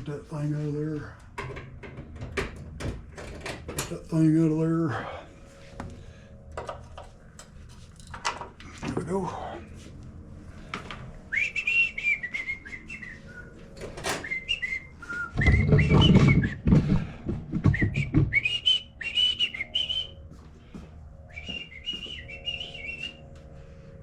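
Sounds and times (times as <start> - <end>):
person whistling a tune: 11.3 - 13.6, 14.2 - 16.6, 17.6 - 20.2, 21.3 - 23.3
clattering and knocking: 15.4 - 18.4.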